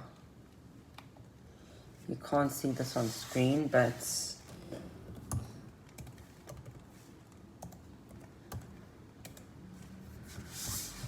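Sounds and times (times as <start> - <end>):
keyboard typing clicks: 7.6 - 9.5.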